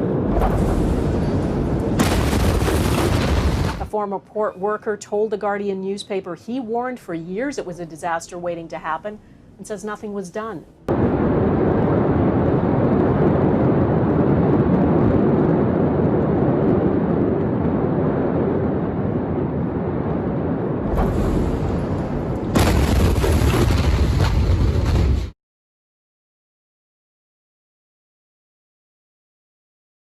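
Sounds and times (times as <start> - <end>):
fire rumbling: 0.0 - 3.9, 10.9 - 25.4.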